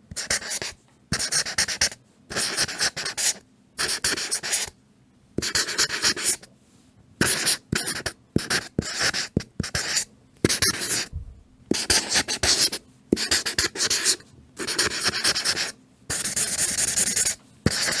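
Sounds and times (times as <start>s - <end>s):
marker pen squeaking on paper: 11.8s - 18.0s.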